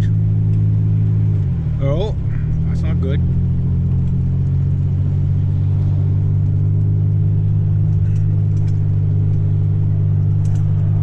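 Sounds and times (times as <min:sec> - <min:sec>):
car engine and road drone: 0:00.0 - 0:11.0.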